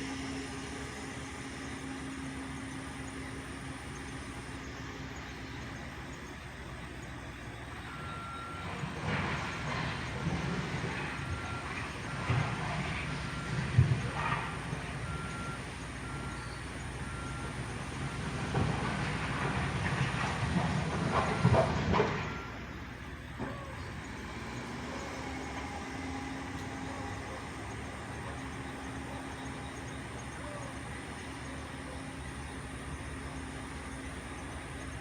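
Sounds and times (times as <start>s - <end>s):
backhoe engine running: 0.0s - 35.0s
backup alarm beeping: 7.6s - 8.9s, 11.0s - 18.3s.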